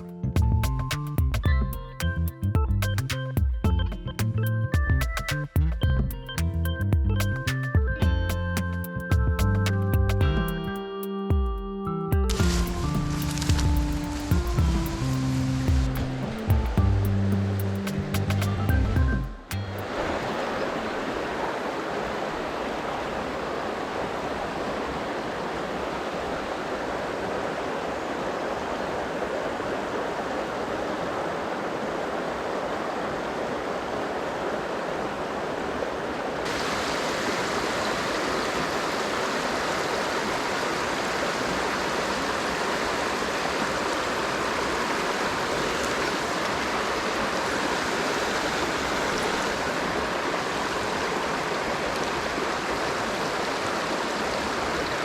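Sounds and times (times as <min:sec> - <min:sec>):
water rushing over rocks: 0:12.3 - 0:55.0.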